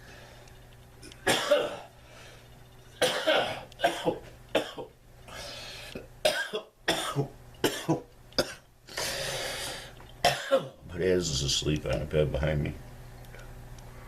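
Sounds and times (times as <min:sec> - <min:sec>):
man coughing: 0:01.2 - 0:01.9, 0:03.0 - 0:04.9, 0:06.2 - 0:08.6, 0:10.2 - 0:10.8.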